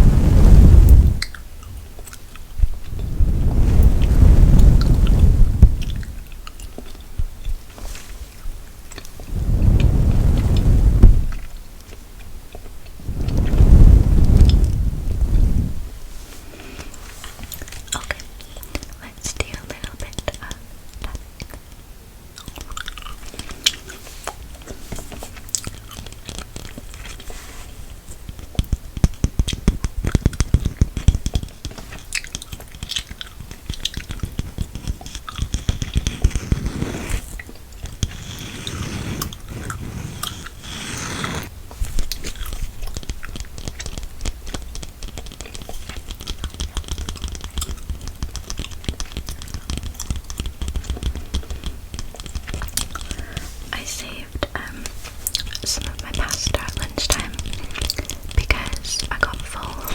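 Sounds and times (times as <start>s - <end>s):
gum chewing mouth clicks: 22.3s - 24.0s, 24.6s - 27.2s, 28.2s - 36.4s, 42.1s - 53.4s.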